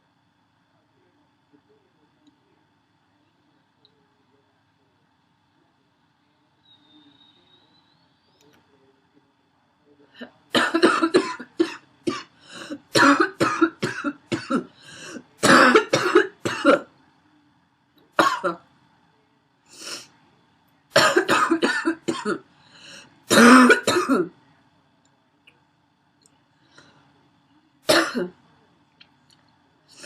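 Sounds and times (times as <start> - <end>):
woman coughing: 10.6 - 16.9, 18.2 - 18.6, 21.0 - 22.5, 23.3 - 24.3, 27.9 - 28.4.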